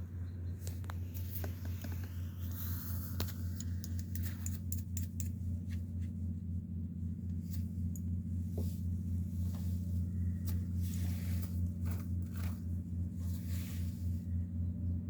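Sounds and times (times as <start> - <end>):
steady low hum: 0.0 - 15.0
rustles: 7.3 - 14.4.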